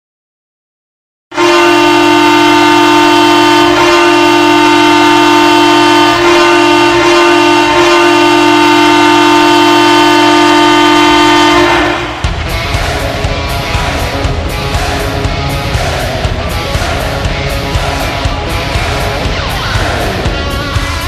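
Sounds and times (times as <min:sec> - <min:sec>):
arena goal horn blast: 0:01.3 - 0:12.3
electric guitar rock music: 0:10.8 - 0:21.0.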